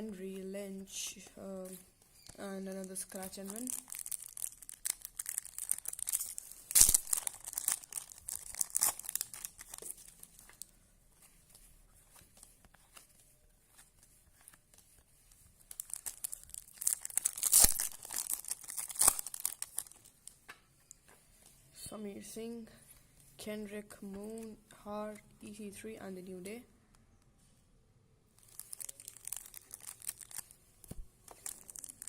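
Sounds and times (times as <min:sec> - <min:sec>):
cards being handled: 0:01.6 - 0:21.6, 0:28.4 - 0:32.0
card packet wrappers crinkling: 0:02.6 - 0:21.1, 0:28.4 - 0:32.0
wrapper ripping: 0:02.8 - 0:10.7, 0:15.6 - 0:20.4, 0:28.4 - 0:30.6, 0:31.2 - 0:32.0.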